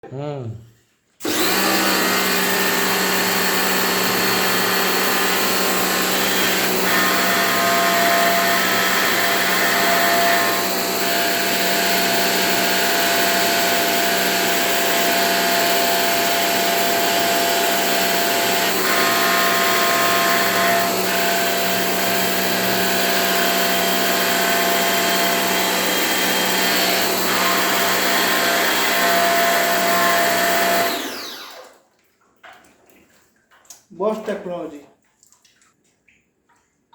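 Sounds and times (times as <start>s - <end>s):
pressure washer motor whining: 1.2s - 31.7s.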